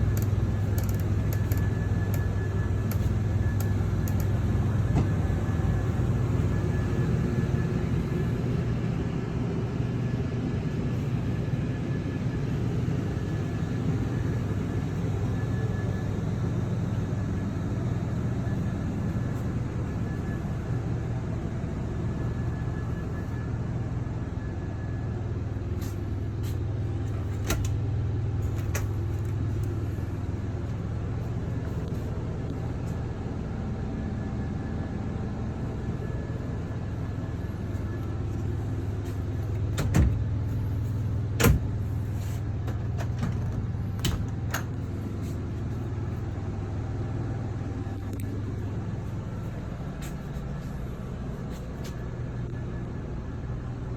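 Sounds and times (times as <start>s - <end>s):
vehicle engine humming: 0.0s - 8.8s.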